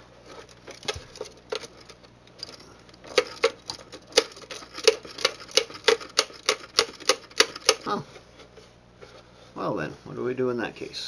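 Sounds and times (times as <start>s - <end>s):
steady clicking: 0.7s - 7.9s.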